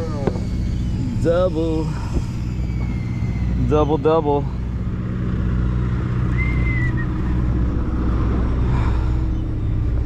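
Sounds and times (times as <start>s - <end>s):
boat engine humming: 0.0s - 10.0s
short high whistle: 6.3s - 7.3s.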